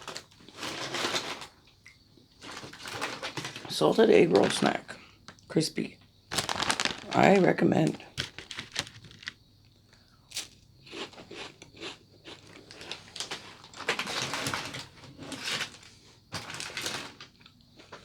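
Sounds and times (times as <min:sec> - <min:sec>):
crunching and chewing snack: 0:06.3 - 0:07.4, 0:08.0 - 0:15.4.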